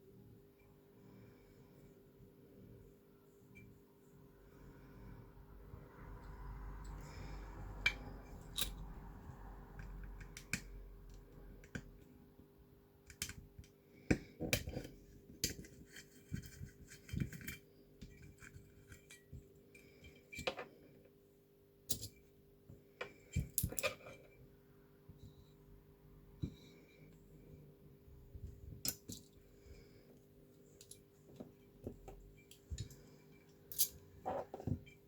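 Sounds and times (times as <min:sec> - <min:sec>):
small parts clicking and tapping: 0:07.8 - 0:09.0, 0:09.7 - 0:12.1, 0:13.0 - 0:20.7, 0:21.9 - 0:22.3, 0:30.8 - 0:35.0.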